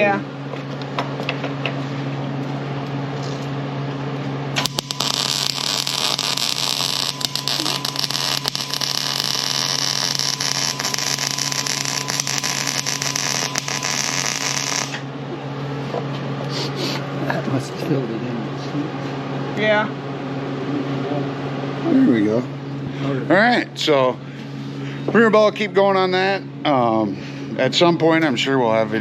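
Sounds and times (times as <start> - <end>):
low hum: 1.9 - 16.4
welder arc crackling: 4.6 - 15.1.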